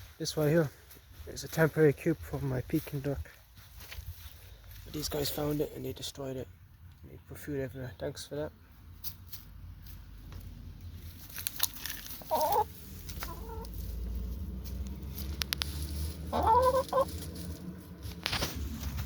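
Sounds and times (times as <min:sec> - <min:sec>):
hens calling: 0:11.7 - 0:17.6.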